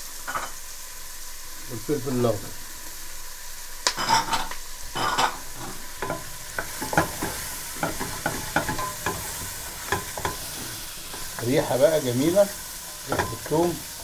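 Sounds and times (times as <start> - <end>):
vegetables sizzling in oil: 0.0 - 14.0
utensil scraping and knocking a pan: 4.0 - 14.0.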